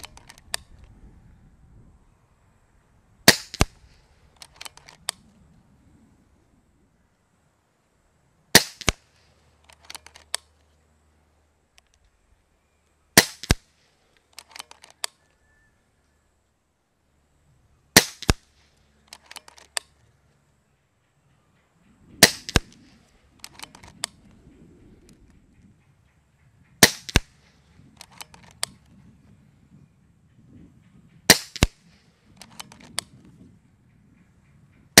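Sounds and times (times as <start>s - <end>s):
rifle action clicks: 0.0s - 1.0s, 3.3s - 5.4s, 8.6s - 10.7s, 13.2s - 15.4s, 18.0s - 20.1s, 22.2s - 24.4s, 26.8s - 29.0s, 31.3s - 33.4s
wind rumble on microphone: 0.0s - 8.5s, 21.2s - 35.0s
air rifle shot crack: 3.2s - 3.9s, 8.5s - 9.1s, 13.2s - 13.8s, 18.0s - 18.6s, 22.2s - 23.8s, 26.8s - 27.4s, 31.3s - 31.9s.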